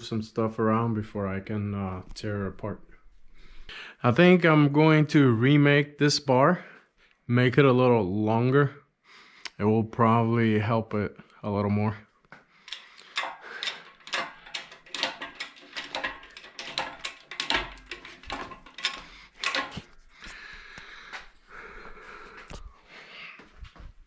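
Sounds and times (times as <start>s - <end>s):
metallic clanks of tools: 12.7s - 20.3s.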